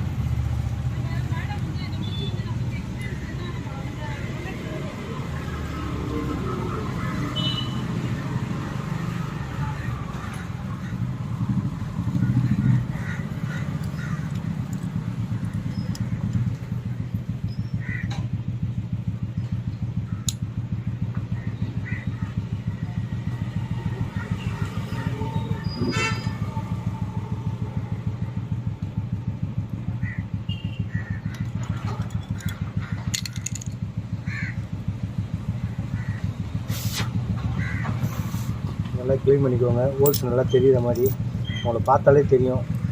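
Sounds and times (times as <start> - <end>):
small engine idling: 8.7 - 42.9.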